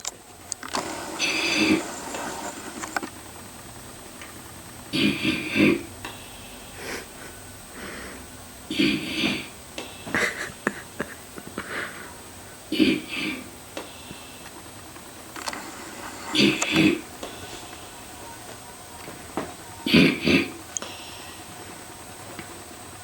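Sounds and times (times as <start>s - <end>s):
soft breathing: 0.8s - 2.9s, 5.1s - 10.2s, 13.2s - 14.7s, 15.6s - 18.5s, 20.4s - 22.6s
man snoring: 0.9s - 2.7s, 4.9s - 9.6s, 11.7s - 13.5s, 15.8s - 18.1s, 19.8s - 21.4s.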